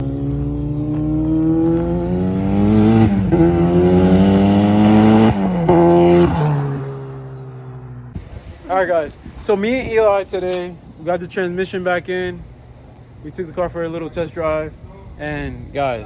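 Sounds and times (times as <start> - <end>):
car engine accelerating: 0.0 - 8.2.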